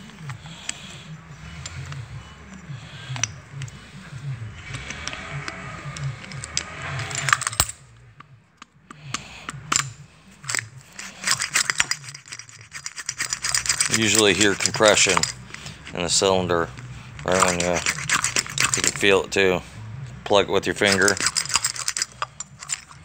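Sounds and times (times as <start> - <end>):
metal parts clicking and clinking: 4.6 - 7.8, 9.4 - 19.1, 20.7 - 23.0.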